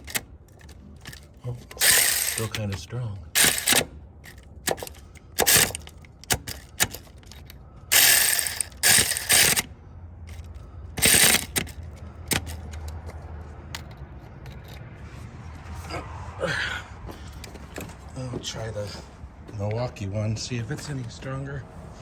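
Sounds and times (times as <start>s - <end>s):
impact wrench hammering: 1.0s - 2.8s, 3.4s - 9.7s, 10.3s - 14.0s
clicks of tool handling: 10.3s - 15.0s.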